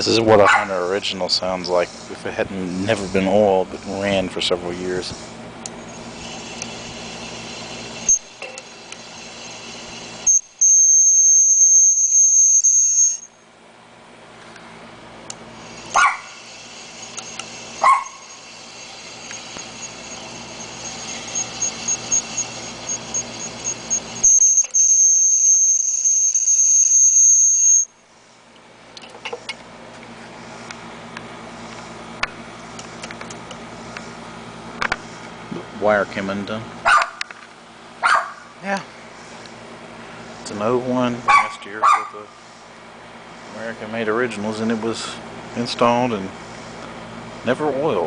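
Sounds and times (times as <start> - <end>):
fan bearings squealing: 0.0 - 13.5, 15.3 - 28.0
ceiling fan motor humming: 0.0 - 48.0.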